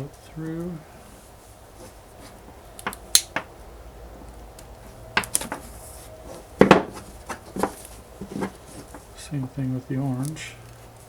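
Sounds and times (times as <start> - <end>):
sharp handling clicks: 2.8 - 3.5.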